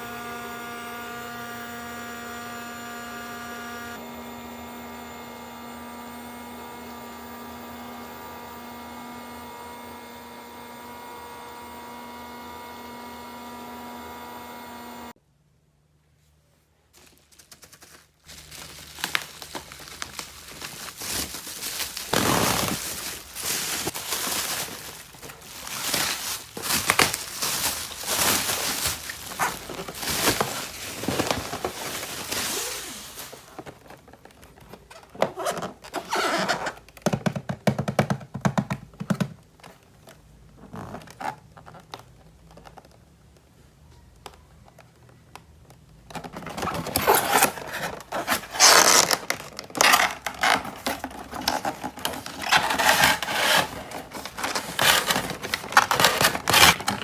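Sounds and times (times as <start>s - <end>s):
scraping and rustling: 16.9s - 36.8s, 46.1s - 57.0s.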